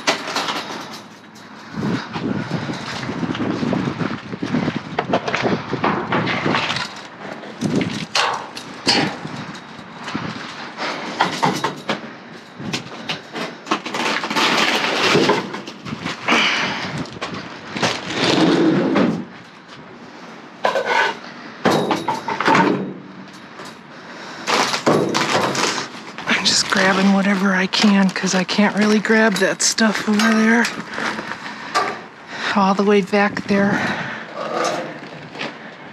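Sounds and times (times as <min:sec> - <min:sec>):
items rustling and clattering in dumpster: 0:00.0 - 0:35.9.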